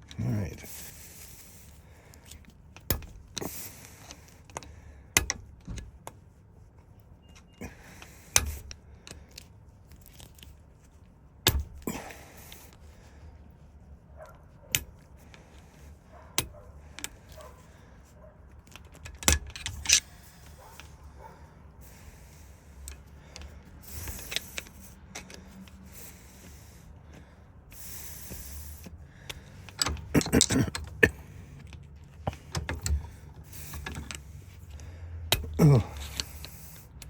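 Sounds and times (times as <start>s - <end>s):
sharp metal clicks and taps: 2.2s - 6.2s, 11.4s - 11.9s, 16.4s - 17.5s, 18.6s - 20.1s, 28.8s - 37.0s.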